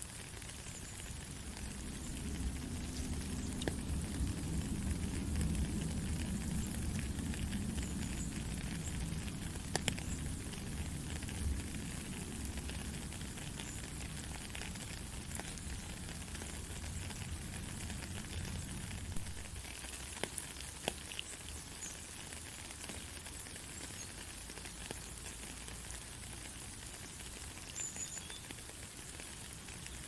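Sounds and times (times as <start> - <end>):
heavy rain falling: 0.0 - 30.0
rain drop clicks: 0.0 - 30.0
low rumble: 1.2 - 19.6.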